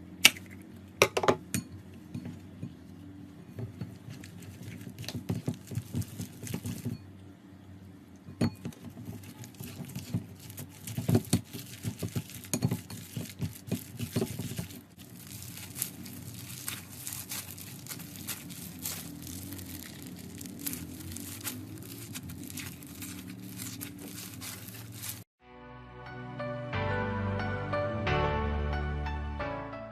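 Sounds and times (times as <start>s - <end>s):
slime squishing by hand: 3.6s - 7.0s, 8.6s - 25.3s.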